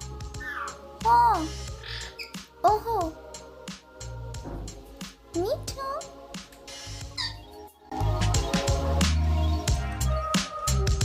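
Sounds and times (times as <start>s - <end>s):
high squeaky call: 1.4s - 2.4s
electronic music with heavy bass: 6.6s - 11.0s.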